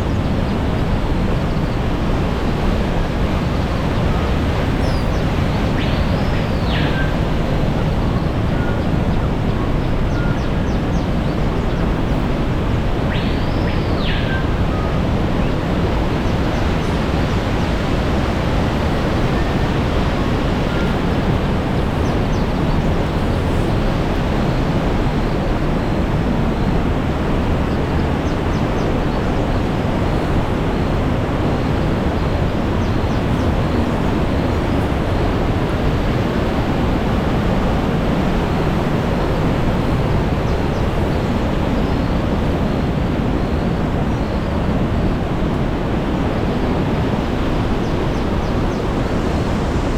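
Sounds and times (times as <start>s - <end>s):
mountain stream rushing: 14.0s - 49.9s.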